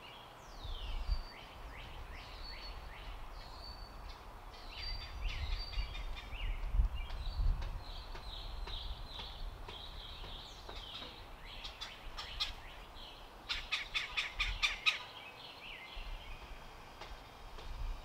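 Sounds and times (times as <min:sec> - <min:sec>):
birds chirping: 0:00.0 - 0:17.5
sharp clicking bird chips: 0:06.6 - 0:12.6.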